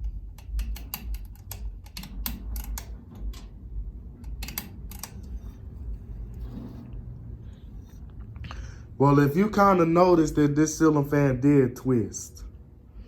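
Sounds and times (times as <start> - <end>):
ceiling fan switch clicks: 0.0 - 5.4
ceiling fan humming: 0.0 - 13.0.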